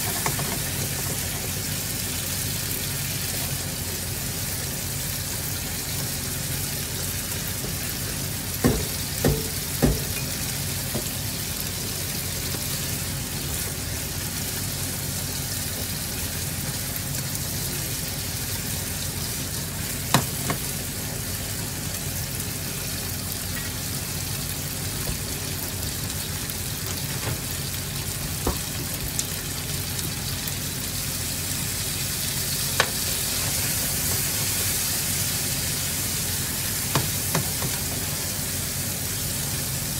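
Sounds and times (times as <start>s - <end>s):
food sizzling in a pan: 0.0s - 39.9s
utensil knocking against pan: 8.6s - 10.3s.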